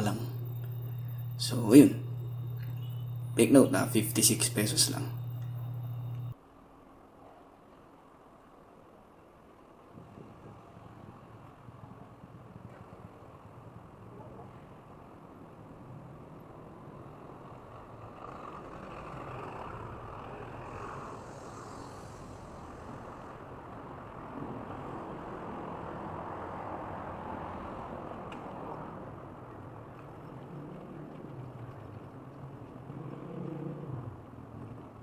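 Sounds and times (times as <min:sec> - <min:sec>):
road and traffic noise: 0:09.2 - 0:35.0.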